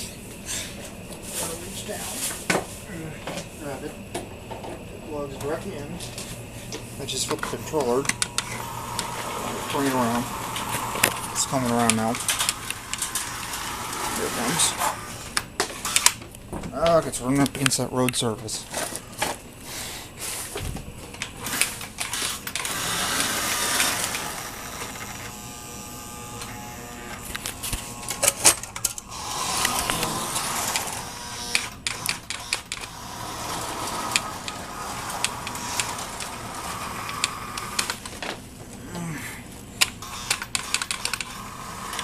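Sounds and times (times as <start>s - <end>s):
model train motor whirring: 7.1s - 16.2s, 21.2s - 38.4s, 39.8s - 42.0s.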